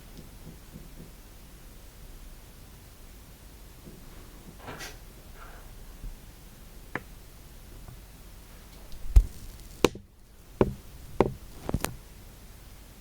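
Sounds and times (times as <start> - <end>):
dull low thud: 9.0 - 11.8
knocks and taps: 9.1 - 12.0.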